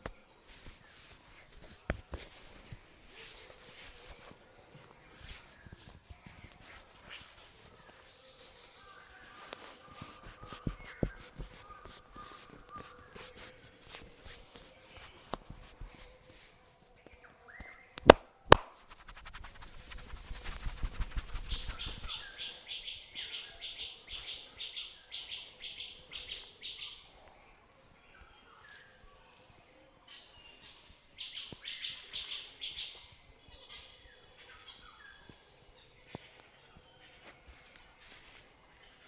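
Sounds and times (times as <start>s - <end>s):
bird chirping: 3.1s - 15.3s, 19.0s - 39.0s
rapid rhythmic tapping: 18.0s - 22.3s.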